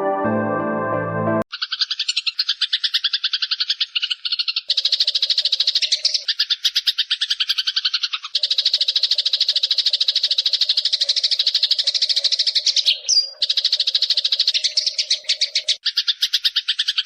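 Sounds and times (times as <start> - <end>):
sparrow chattering: 1.5 - 17.0.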